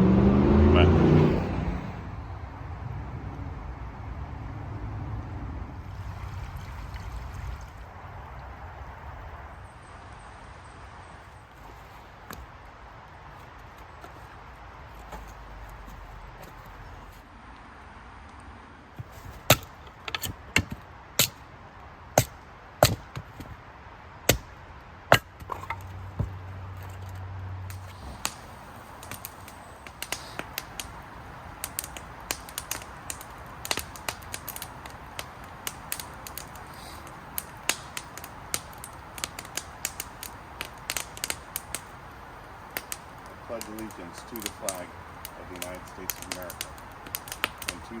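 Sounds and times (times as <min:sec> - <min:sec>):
fire crackling and popping: 0:00.0 - 0:02.2, 0:22.1 - 0:23.6, 0:24.3 - 0:48.0
steady fire hiss: 0:27.4 - 0:48.0.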